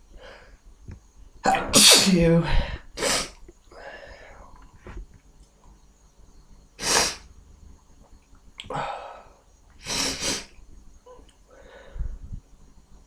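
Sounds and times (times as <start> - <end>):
man sneezing: 1.5 - 2.1
audible breath: 11.5 - 12.3.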